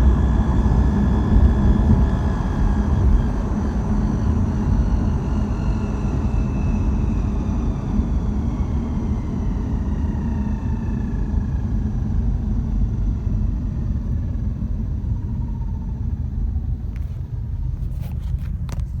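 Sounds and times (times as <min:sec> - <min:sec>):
car engine rumbling: 0:00.0 - 0:04.7
gearbox whine: 0:00.0 - 0:19.0.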